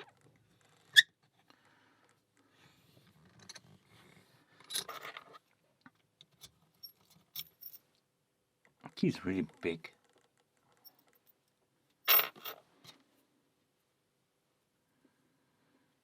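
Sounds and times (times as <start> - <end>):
lock picks clicking and scraping: 4.6 - 5.4, 10.0 - 11.4.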